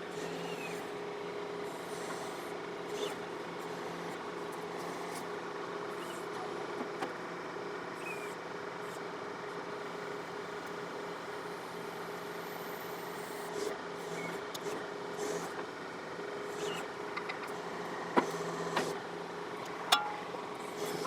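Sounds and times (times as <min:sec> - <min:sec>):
brief high squeaks: 0:08.0 - 0:08.4
diesel tractor engine running: 0:13.8 - 0:21.0.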